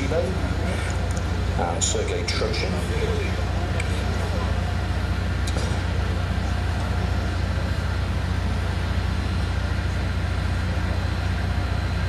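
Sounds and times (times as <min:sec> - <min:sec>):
jet engine noise: 0:00.0 - 0:12.0.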